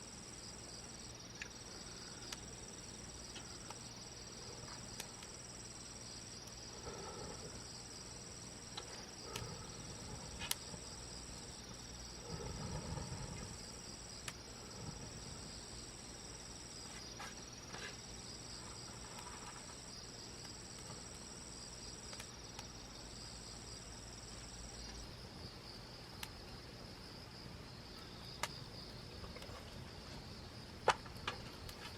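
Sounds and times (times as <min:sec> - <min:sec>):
crickets trilling: 0:00.0 - 0:31.9
campfire pops: 0:04.6 - 0:05.4, 0:08.7 - 0:11.1, 0:22.0 - 0:22.8, 0:28.3 - 0:31.9
low rustle: 0:12.1 - 0:13.9.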